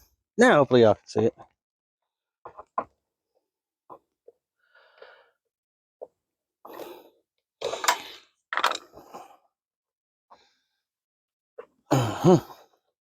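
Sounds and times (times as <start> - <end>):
man groaning: 11.9 - 12.6.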